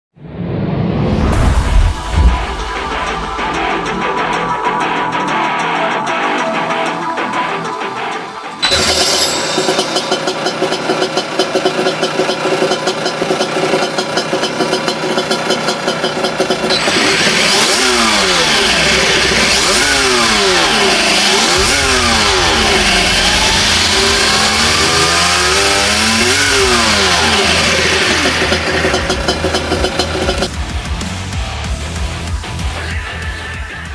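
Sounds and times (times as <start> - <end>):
simulated motorcycle engine revving: 9.7 - 32.7.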